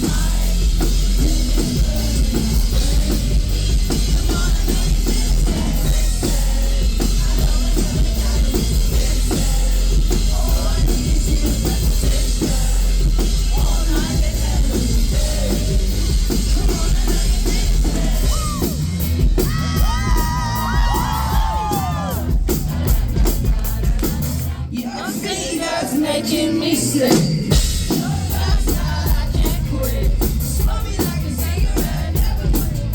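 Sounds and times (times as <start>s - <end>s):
rock band music: 0.0s - 32.9s
person singing or yelling: 16.5s - 22.4s
high whooping voices: 17.8s - 23.0s.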